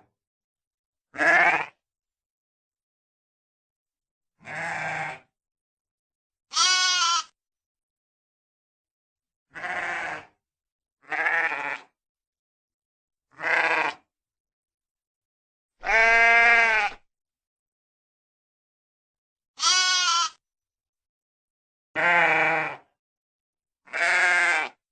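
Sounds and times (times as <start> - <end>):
sheep bleating: 1.1 - 1.8, 4.4 - 5.3, 6.5 - 7.4, 9.5 - 10.4, 11.0 - 11.9, 13.3 - 14.0, 15.8 - 17.0, 19.6 - 20.4, 22.0 - 22.9, 23.9 - 24.8.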